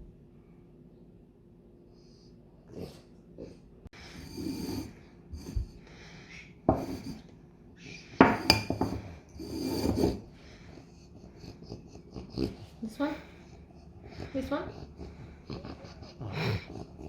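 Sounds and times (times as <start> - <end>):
dog snorting and sniffing: 9.4 - 17.0.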